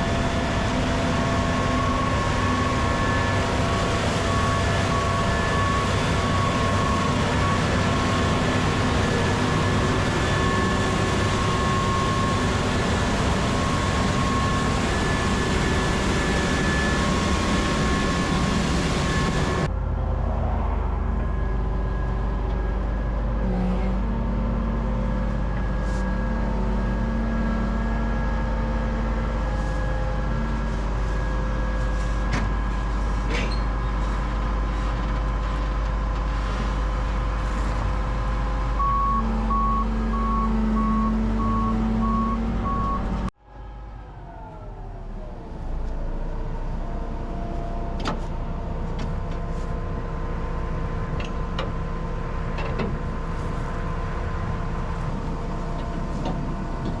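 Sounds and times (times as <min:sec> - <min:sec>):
harvester engine under load: 0:00.0 - 0:57.0
electronic warning beep: 0:38.8 - 0:43.2.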